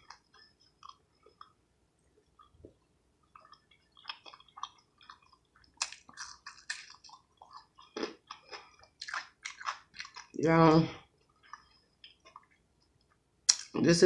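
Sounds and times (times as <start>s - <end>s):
mouth chewing food: 0.0s - 13.8s
crunchy bites: 4.0s - 10.4s.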